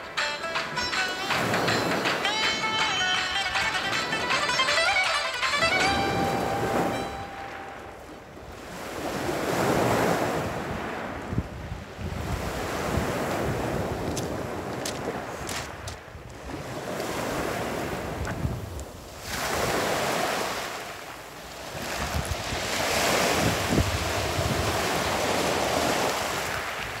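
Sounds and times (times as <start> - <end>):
sea waves washing in: 0.0 - 27.0
wind buffeting microphone: 5.6 - 20.5, 21.5 - 27.0.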